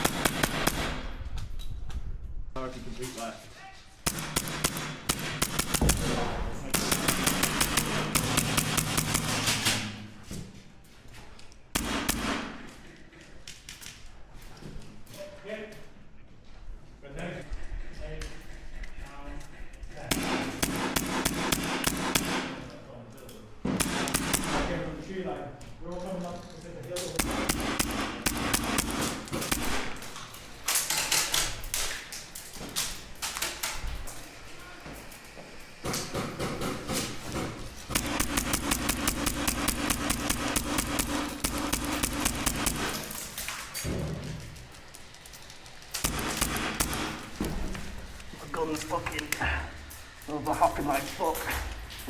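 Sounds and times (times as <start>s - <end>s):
airsoft gunfire cracks: 0.0s - 1.2s, 4.1s - 9.9s, 11.8s - 12.6s, 20.1s - 22.7s, 23.8s - 24.8s, 27.2s - 30.1s, 37.9s - 43.4s, 46.0s - 47.4s.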